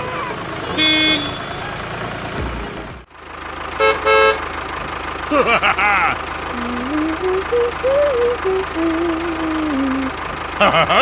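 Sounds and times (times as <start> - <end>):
engine rumble: 0.0 - 11.0
vehicle horn honking: 0.6 - 2.0, 3.8 - 4.5.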